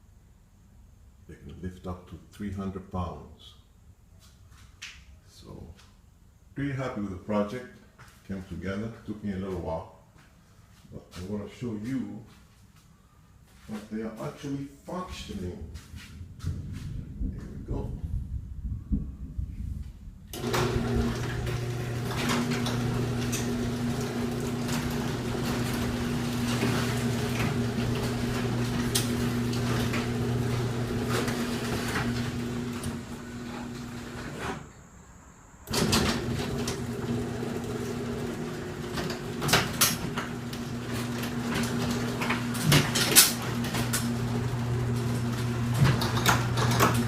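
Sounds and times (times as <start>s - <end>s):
garage door opener running: 20.3s - 34.7s, 35.6s - 47.0s
door rattles and clicks: 35.7s - 47.0s.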